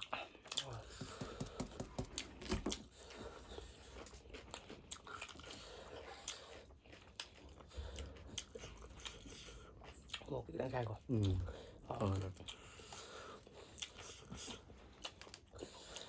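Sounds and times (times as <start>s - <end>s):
chewing and crunching: 0.0s - 1.3s, 2.1s - 16.0s.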